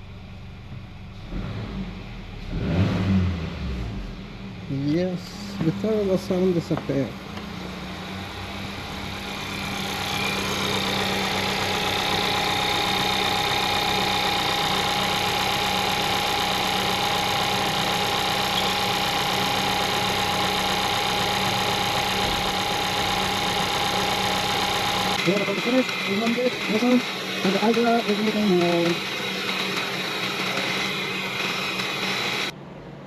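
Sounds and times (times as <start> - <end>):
car engine idling: 0.0 - 2.6, 4.0 - 32.6.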